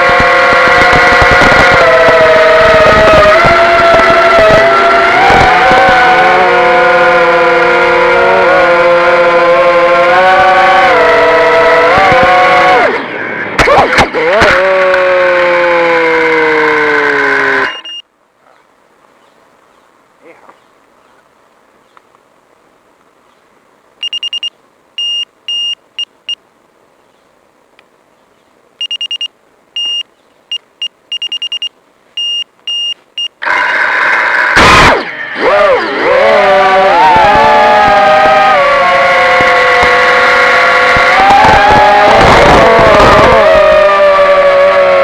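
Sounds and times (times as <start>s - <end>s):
drone motors whining: 0.0s - 18.0s, 32.2s - 45.0s
short high electronic beeps: 17.7s - 18.0s, 24.0s - 26.4s, 28.8s - 33.4s.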